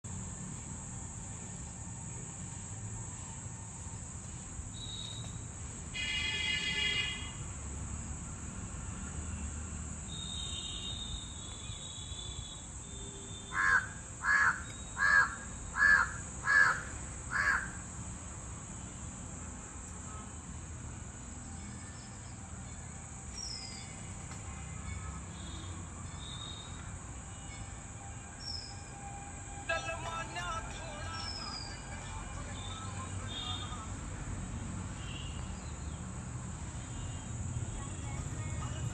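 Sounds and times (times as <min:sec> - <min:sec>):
high-pitched insect drone: 0:00.3 - 0:20.6, 0:21.2 - 0:33.9
faint small bird chirps: 0:04.8 - 0:05.4, 0:23.4 - 0:24.1, 0:25.4 - 0:26.8
crow cawing: 0:13.5 - 0:17.8.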